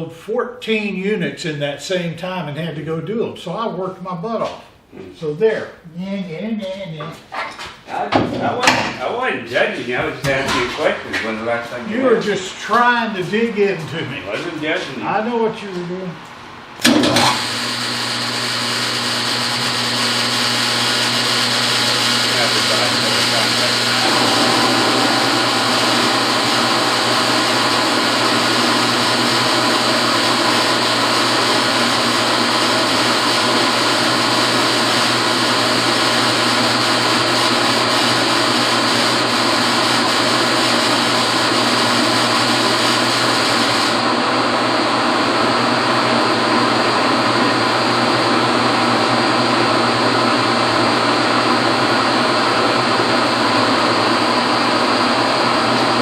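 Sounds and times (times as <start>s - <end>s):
motor-driven machine running: 16.8s - 36.6s
low hum: 23.6s - 30.3s.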